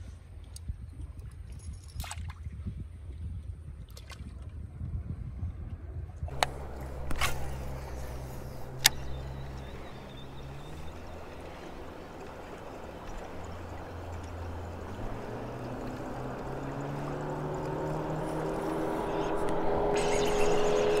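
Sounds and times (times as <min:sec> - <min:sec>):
distant motor hum: 0:06.3 - 0:21.0
faint water sounds: 0:06.3 - 0:21.0.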